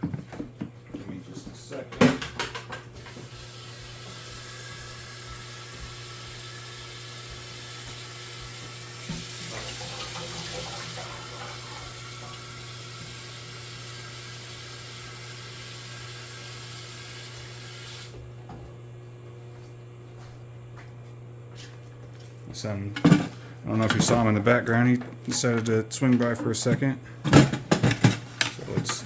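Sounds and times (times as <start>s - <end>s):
water running into a tank: 3.0s - 18.2s.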